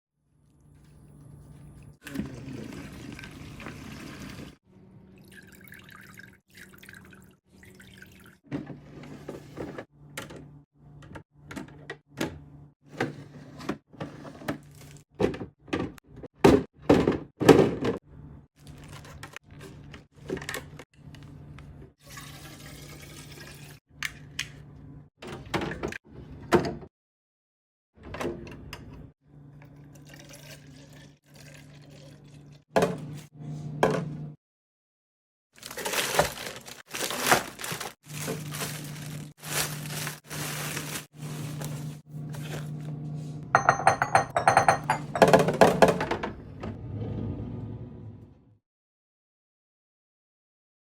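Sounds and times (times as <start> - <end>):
liquid being poured: 5.2 - 8.4, 29.9 - 32.5
containers clacking on fridge shelves: 43.6 - 46.3.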